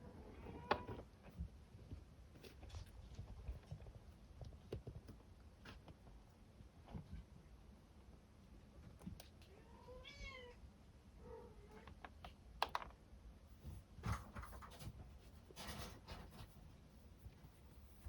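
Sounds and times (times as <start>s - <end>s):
kitten scratching in litter: 14.0s - 18.0s.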